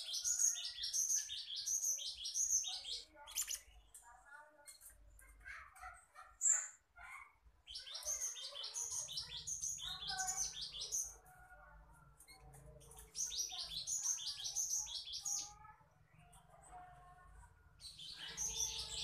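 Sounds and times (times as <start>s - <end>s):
bird chirping song: 0.0s - 4.0s, 7.6s - 11.2s, 12.2s - 16.4s, 17.8s - 19.0s.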